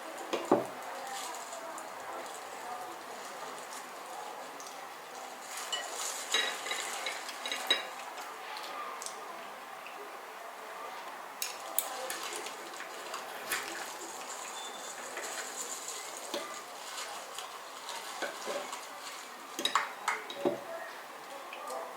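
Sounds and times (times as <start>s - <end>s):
food sizzling in a frying pan: 0.0s - 8.4s, 11.4s - 21.3s
utensils clinking against dishes: 5.4s - 8.7s, 11.4s - 20.7s.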